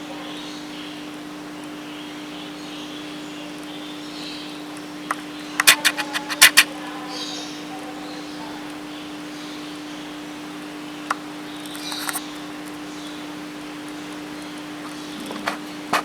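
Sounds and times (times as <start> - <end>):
faint distant birdsong: 0.0 - 16.0
sharp loud clicks: 5.1 - 6.7.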